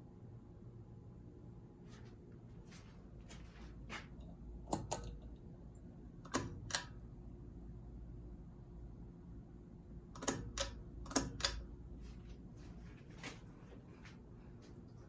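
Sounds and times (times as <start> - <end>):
ceiling fan hum: 0.0 - 15.0
sharp clicks: 10.2 - 11.7.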